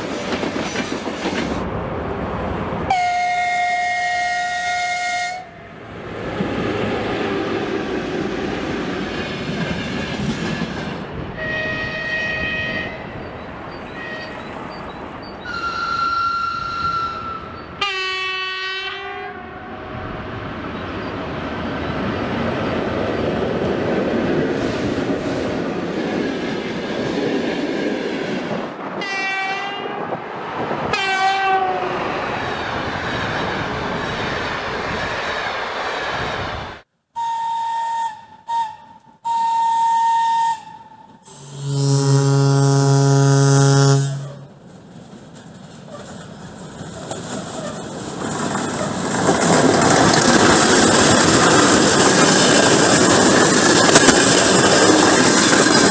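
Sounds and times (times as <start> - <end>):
train rumbling: 0.0 - 36.9, 41.0 - 55.9
train horn blasts: 2.9 - 5.7, 11.4 - 13.1, 15.5 - 19.7, 29.0 - 30.0, 30.9 - 32.0, 37.2 - 44.6
train whistle: 2.9 - 5.7, 11.4 - 13.0, 15.4 - 19.7, 29.0 - 30.0, 30.9 - 32.0, 37.2 - 44.5.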